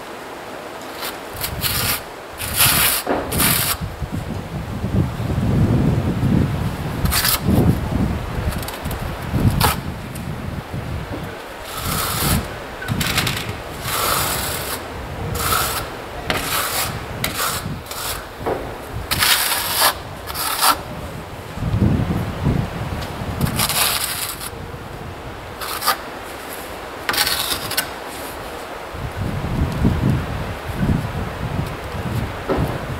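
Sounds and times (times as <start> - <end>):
trowel scraping over adhesive: 0.9 - 3.8, 7.0 - 7.6, 11.6 - 18.4, 19.1 - 20.9, 23.4 - 24.5, 25.6 - 28.5.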